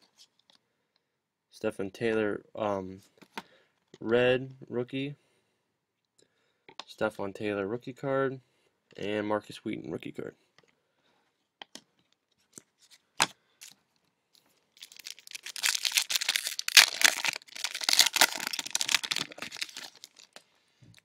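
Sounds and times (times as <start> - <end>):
foil wrapper tearing and crinkling: 14.8 - 20.4.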